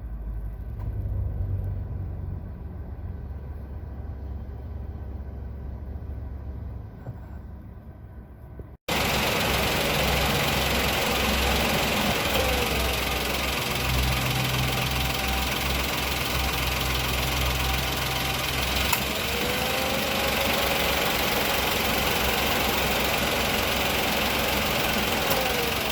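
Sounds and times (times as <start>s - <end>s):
throbbing mechanical rumble: 7.6s - 25.9s.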